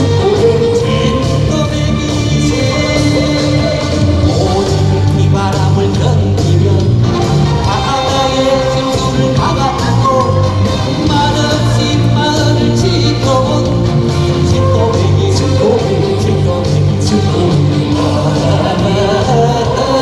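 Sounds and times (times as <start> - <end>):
band backing track: 0.0 - 20.0
man singing: 0.0 - 20.0.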